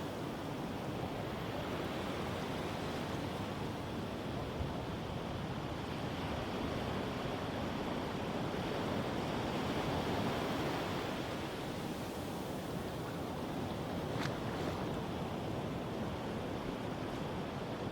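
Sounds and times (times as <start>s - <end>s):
ocean waves on sandy beach: 0.0s - 17.9s.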